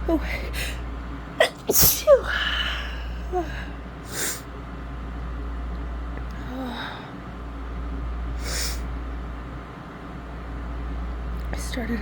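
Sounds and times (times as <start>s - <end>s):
woman sneezing: 1.4s - 2.4s.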